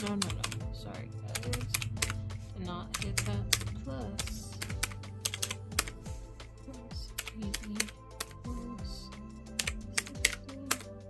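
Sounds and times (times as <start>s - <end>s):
calculator keys tapping: 0.0s - 0.7s, 1.3s - 2.2s, 2.8s - 6.0s, 7.0s - 8.4s, 9.6s - 10.9s
background music: 0.0s - 11.0s.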